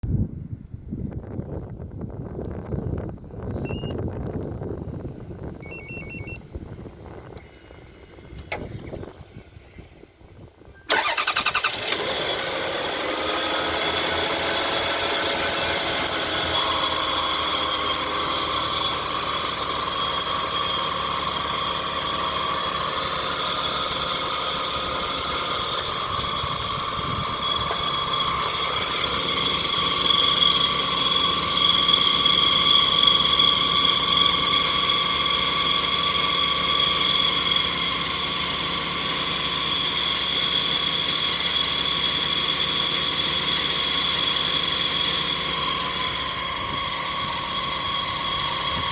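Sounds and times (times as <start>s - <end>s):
high-pitched whistle: 3.6s - 4.0s, 5.6s - 6.4s
car engine running: 10.9s - 48.9s.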